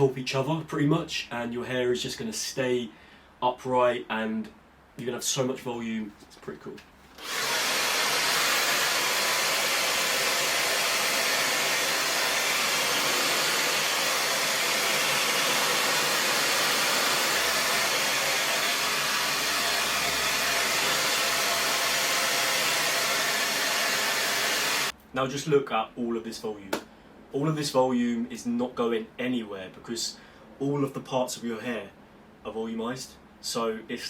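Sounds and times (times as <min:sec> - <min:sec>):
hair dryer blowing: 0:07.2 - 0:24.9.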